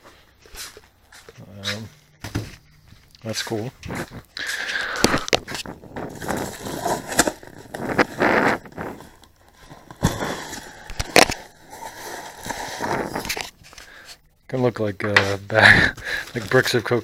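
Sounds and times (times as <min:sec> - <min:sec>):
cardboard rustling and scraping: 0:00.5 - 0:04.3, 0:05.0 - 0:14.2.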